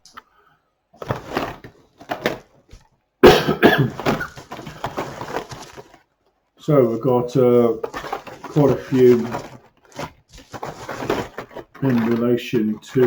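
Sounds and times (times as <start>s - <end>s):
man coughing: 3.2s - 4.3s.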